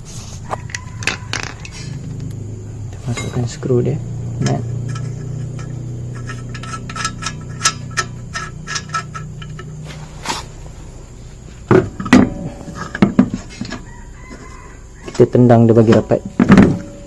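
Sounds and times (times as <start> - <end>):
metal wheel nuts clinking: 0.5 - 17.0.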